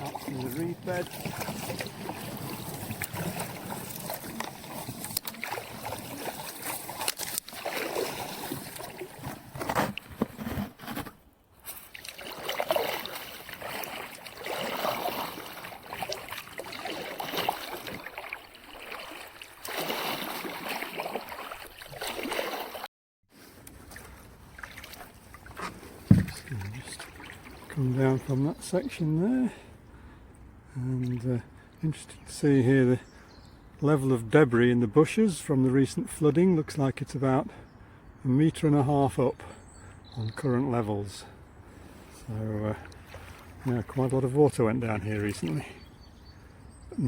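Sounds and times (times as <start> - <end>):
paddle splashing water: 0.0 - 29.0, 41.7 - 46.0.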